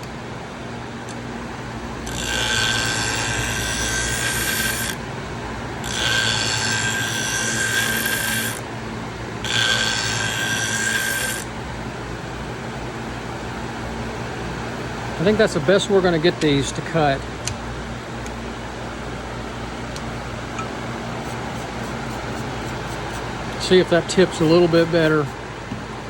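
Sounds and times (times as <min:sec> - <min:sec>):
blade grinding on sharpening wheel: 0:02.0 - 0:05.0, 0:05.8 - 0:08.6, 0:09.4 - 0:11.5, 0:20.9 - 0:25.4
low motor hum: 0:11.4 - 0:26.0.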